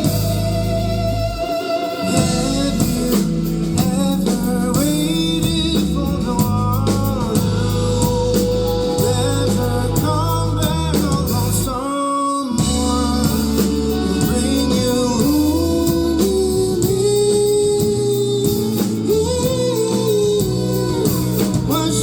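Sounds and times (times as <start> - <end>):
bass guitar: 0.0 - 11.9, 12.5 - 22.0
drum kit: 0.0 - 22.0
electric guitar: 0.0 - 22.0
person singing: 0.0 - 22.0.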